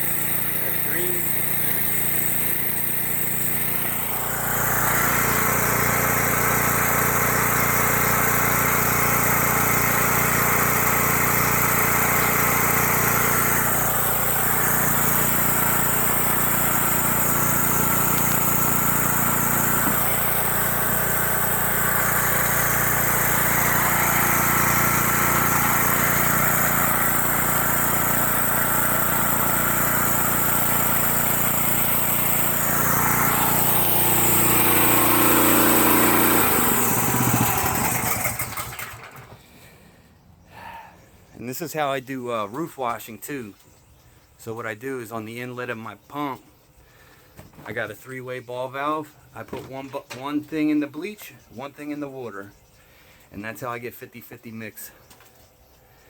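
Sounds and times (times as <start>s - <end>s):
spray gun hissing: 0.0s - 4.5s
pressure washer engine running: 0.0s - 39.4s.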